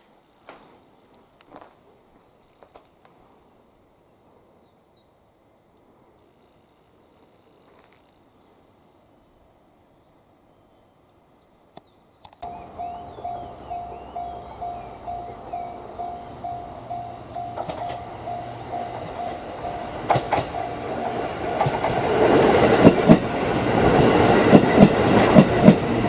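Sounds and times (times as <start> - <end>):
insects trilling: 0.0 - 26.0
repeating ringing tone: 12.4 - 23.0.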